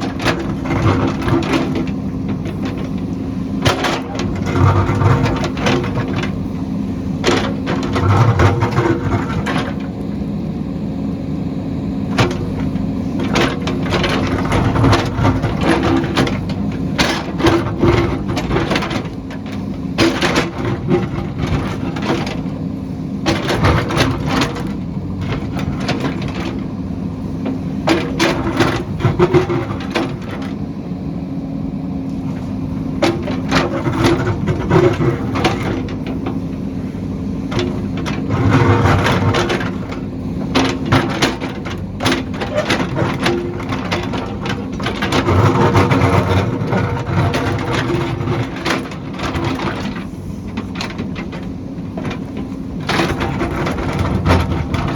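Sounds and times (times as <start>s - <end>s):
backhoe diesel engine running: 0.0s - 54.9s
bucket striking and scraping rock: 37.5s - 54.9s.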